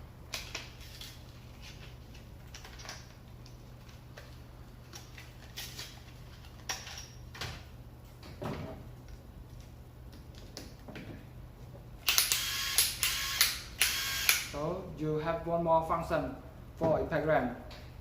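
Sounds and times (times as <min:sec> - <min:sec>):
clicks and knocks of parts: 0:00.3 - 0:07.6.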